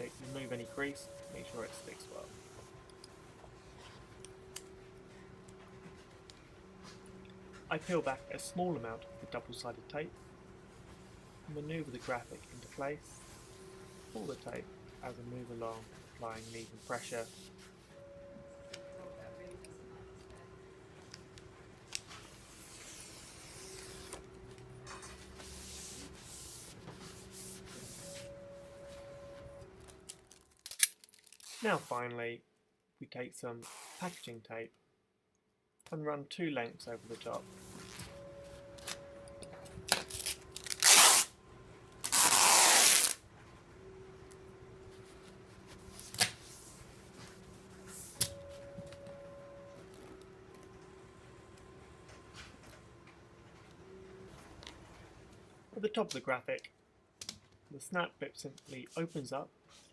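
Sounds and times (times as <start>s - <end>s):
packaging tape pulled off roll: 30.1s - 31.9s, 33.6s - 34.3s, 39.9s - 41.4s, 42.0s - 43.2s.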